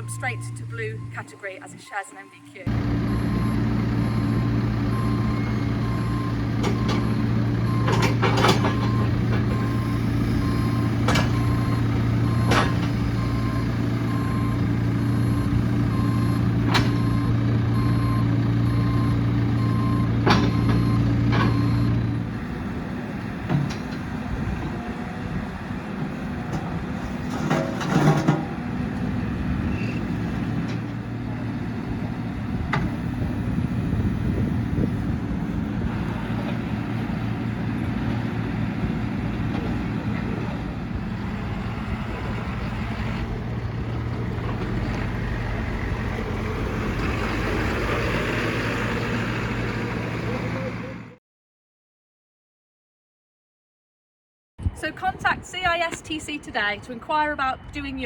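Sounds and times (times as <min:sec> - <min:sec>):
reversing alarm beeping: 0:00.0 - 0:22.0
diesel engine running: 0:00.0 - 0:51.2.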